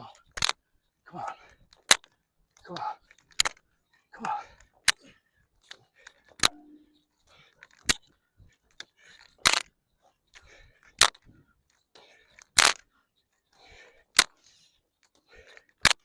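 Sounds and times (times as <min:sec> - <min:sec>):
breathy noise: 0:04.0 - 0:07.8.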